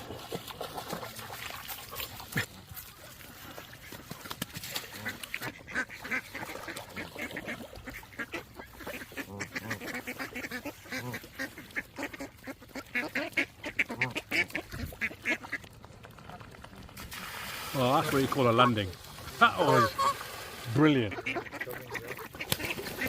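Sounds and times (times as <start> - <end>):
geese honking: 5.0 - 15.7, 17.9 - 23.0.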